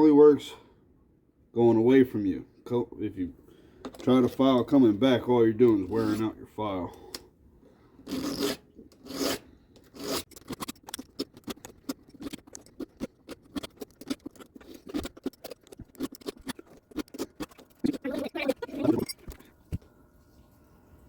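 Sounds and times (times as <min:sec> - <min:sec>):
metal file scraping chain: 0:08.1 - 0:10.5.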